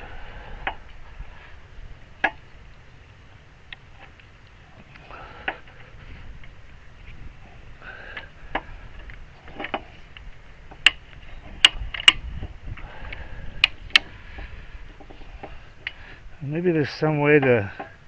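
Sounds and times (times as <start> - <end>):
mechanical clicks and knocks: 10.7 - 12.5.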